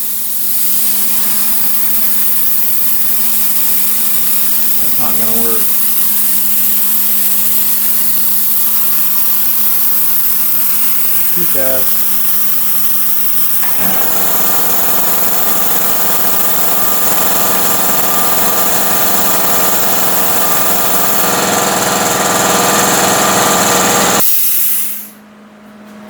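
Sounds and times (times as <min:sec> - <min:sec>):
plasma cutter hissing and buzzing: 0:00.0 - 0:21.5, 0:22.3 - 0:25.2.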